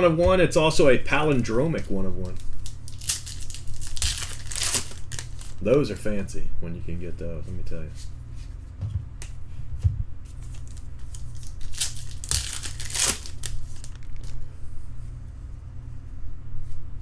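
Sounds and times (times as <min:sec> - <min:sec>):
wrapper tearing and crinkling: 0:02.2 - 0:05.6, 0:10.5 - 0:14.5.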